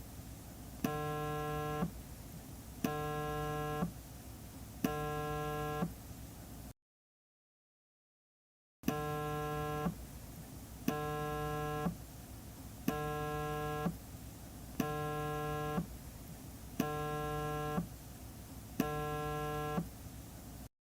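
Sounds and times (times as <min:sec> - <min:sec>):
cell phone vibrating: 0:00.8 - 0:01.9, 0:02.8 - 0:03.9, 0:04.8 - 0:05.9, 0:08.8 - 0:10.0, 0:10.9 - 0:12.0, 0:12.9 - 0:14.0, 0:14.8 - 0:15.9, 0:16.8 - 0:17.9, 0:18.8 - 0:19.9.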